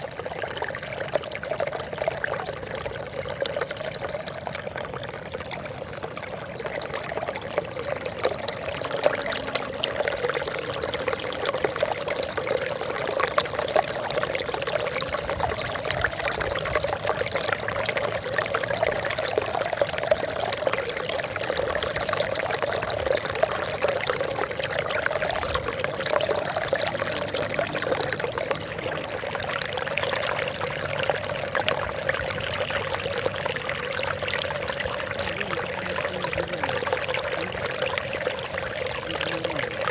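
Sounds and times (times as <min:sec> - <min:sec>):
water trickling and splashing: 0:00.0 - 0:39.9.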